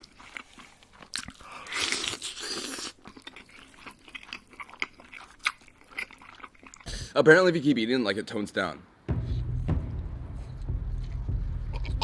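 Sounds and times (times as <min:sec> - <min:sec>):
crunchy chewing: 0:00.0 - 0:06.9.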